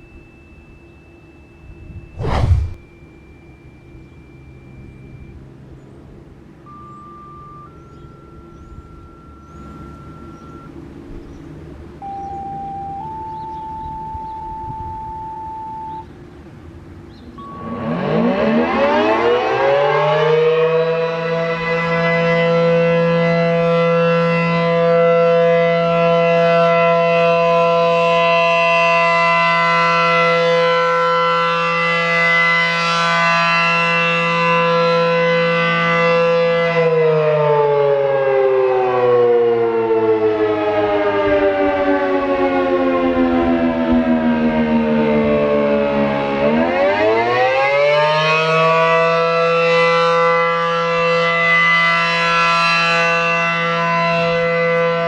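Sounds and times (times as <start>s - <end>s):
siren wailing: 0.0s - 5.8s, 6.6s - 11.1s, 11.9s - 16.1s, 17.4s - 55.0s.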